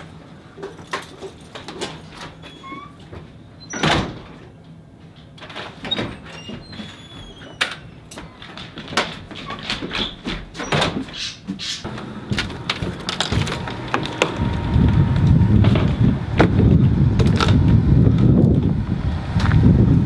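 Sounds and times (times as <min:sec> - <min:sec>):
door opening and shutting: 0:01.6 - 0:04.6, 0:05.3 - 0:17.7
loud door thump: 0:03.7 - 0:04.4
short high squeaks: 0:06.0 - 0:08.1.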